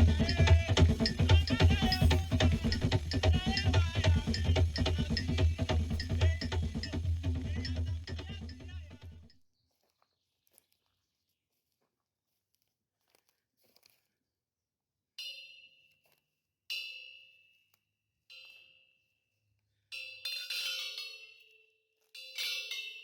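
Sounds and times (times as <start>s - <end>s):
struck bell-like percussion tones: 0.0s - 9.3s.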